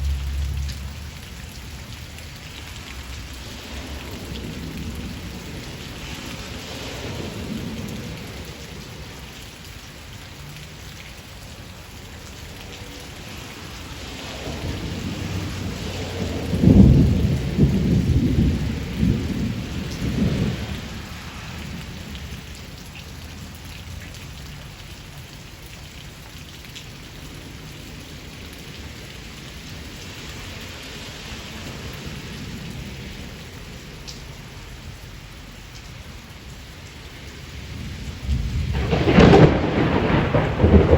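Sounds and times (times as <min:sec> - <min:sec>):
thunder rumbling and cracking: 0:00.0 - 0:09.3, 0:13.6 - 0:22.6, 0:37.5 - 0:40.9
steady rain shower: 0:00.0 - 0:40.9.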